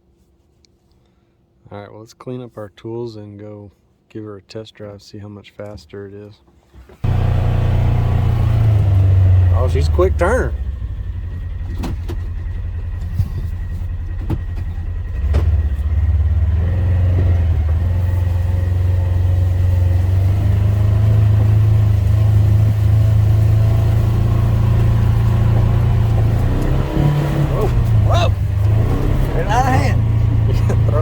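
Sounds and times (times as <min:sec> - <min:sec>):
vehicle engine droning: 0:07.0 - 0:31.0.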